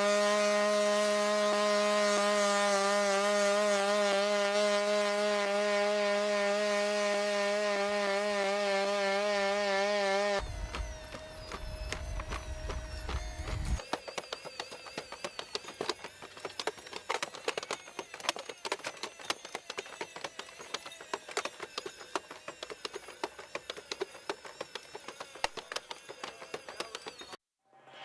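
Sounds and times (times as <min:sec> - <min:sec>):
faint high wavering tone: 0:09.5 - 0:28.0.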